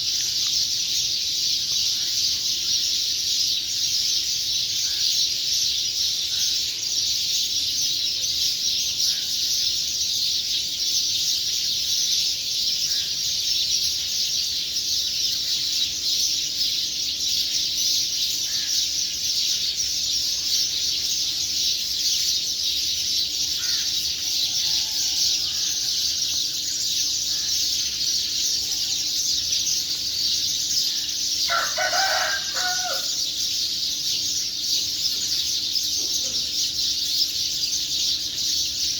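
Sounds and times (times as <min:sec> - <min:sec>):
birds chirping: 0:00.0 - 0:38.9
rooster crowing: 0:24.2 - 0:26.4, 0:31.4 - 0:33.4.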